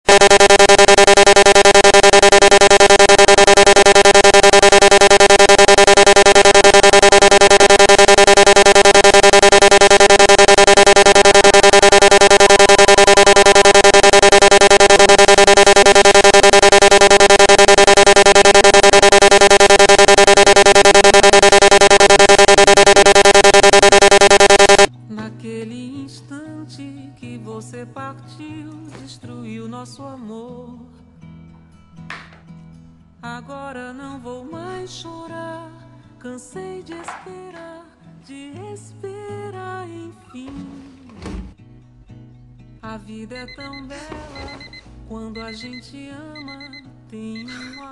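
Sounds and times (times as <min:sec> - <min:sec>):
buzzy synthesizer drone: 0:00.1 - 0:24.9.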